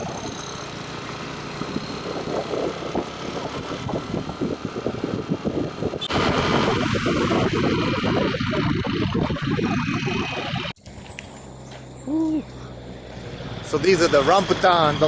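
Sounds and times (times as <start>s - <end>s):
motorcycle riding along road: 0.0s - 15.0s
rough microphone noise: 2.2s - 10.8s.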